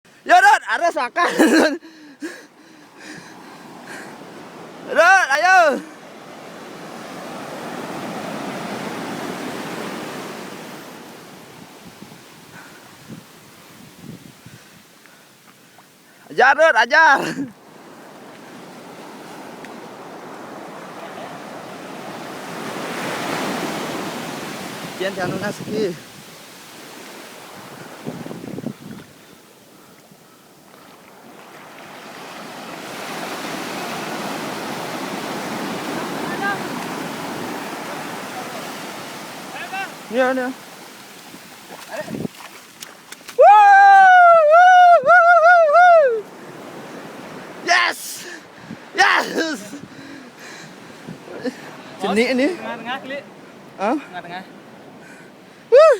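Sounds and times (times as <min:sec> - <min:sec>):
ocean surf: 0:00.1 - 0:55.9
waves washing on a beach: 0:00.1 - 0:55.9
wind on microphone: 0:07.8 - 0:14.9, 0:27.4 - 0:29.3, 0:41.3 - 0:42.5, 0:48.6 - 0:49.0.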